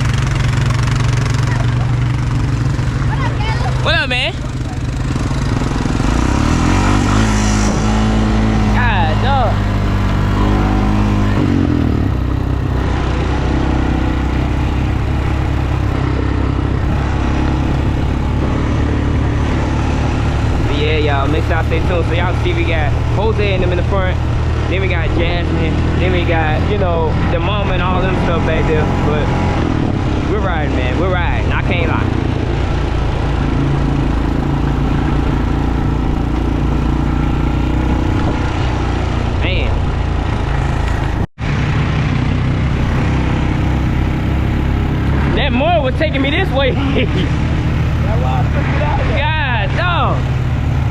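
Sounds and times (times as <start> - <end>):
atv engine running: 0.0 - 50.9.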